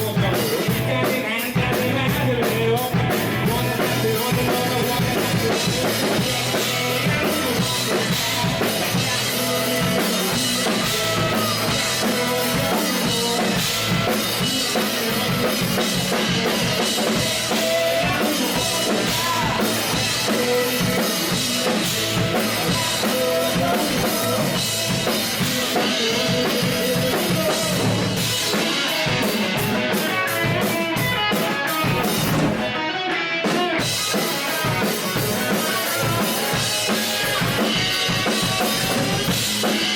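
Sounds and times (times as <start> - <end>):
rapid drum hits: 0.0 - 32.8, 33.6 - 39.9
live rock band playing: 0.0 - 39.9.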